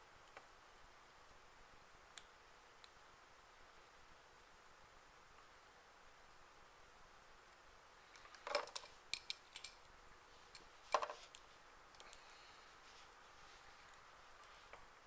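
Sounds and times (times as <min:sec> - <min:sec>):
metal parts clinking on workbench: 0:08.4 - 0:09.8.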